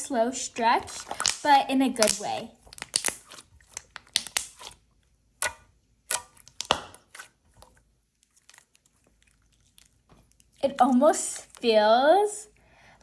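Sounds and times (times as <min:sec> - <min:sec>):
slime sticky pops and clicks: 0:01.1 - 0:04.7, 0:05.4 - 0:07.0.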